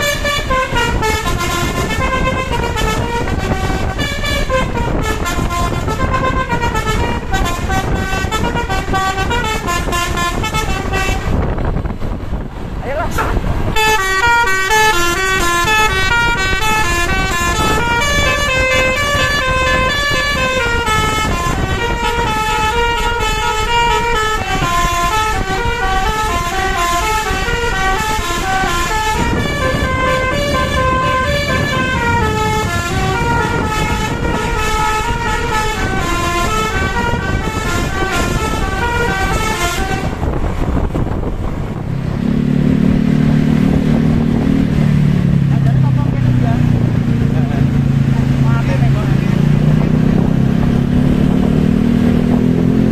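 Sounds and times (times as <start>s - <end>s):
musical air horn tune: 0.0s - 11.6s, 13.7s - 40.5s
bus engine rumble: 0.0s - 52.9s.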